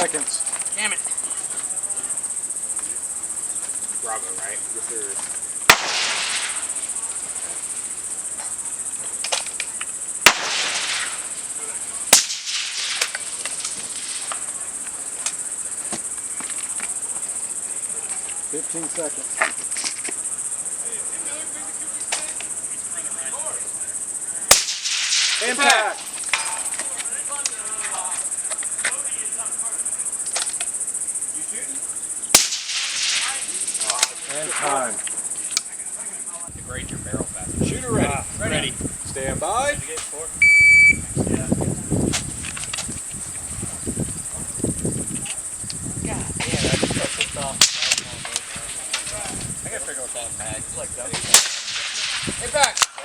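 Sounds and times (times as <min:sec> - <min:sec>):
high-pitched insect chorus: 0:00.0 - 0:53.0
suppressed rifle shots with echo: 0:05.7 - 0:06.6, 0:10.3 - 0:11.2
short sharp cracks: 0:05.7 - 0:06.7, 0:09.2 - 0:11.3, 0:12.1 - 0:14.5, 0:24.5 - 0:27.6, 0:32.3 - 0:34.3, 0:46.6 - 0:49.3, 0:51.2 - 0:53.0
high-pitched insect buzz: 0:40.2 - 0:47.6.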